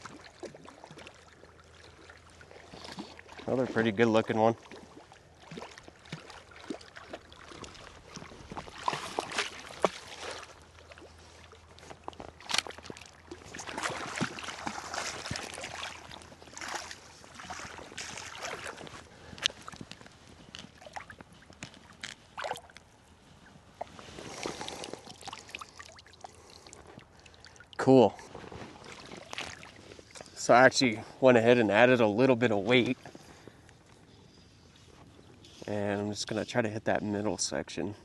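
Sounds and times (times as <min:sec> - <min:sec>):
river water splashing: 0:00.0 - 0:30.6.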